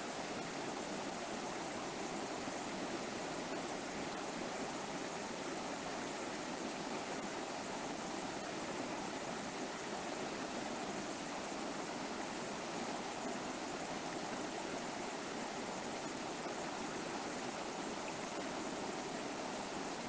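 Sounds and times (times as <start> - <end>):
river water flowing over rocks: 0.0 - 20.0.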